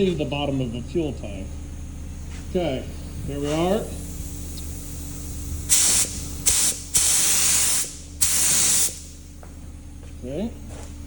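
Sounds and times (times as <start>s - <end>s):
paint spray gun hissing: 2.9s - 9.3s.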